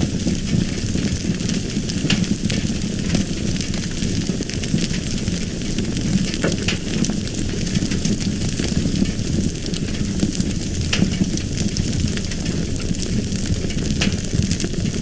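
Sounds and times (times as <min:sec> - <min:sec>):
fire crackling and hissing: 0:00.0 - 0:15.0.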